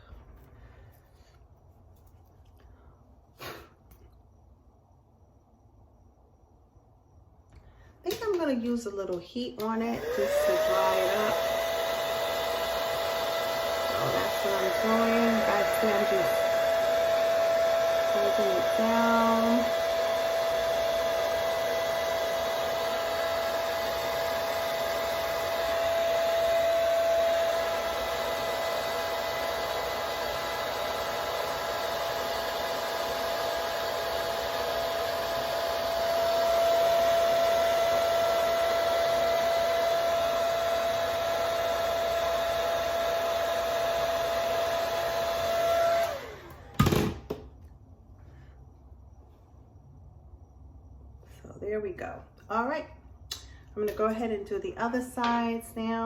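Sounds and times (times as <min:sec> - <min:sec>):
hair dryer blowing: 0:08.1 - 0:47.4.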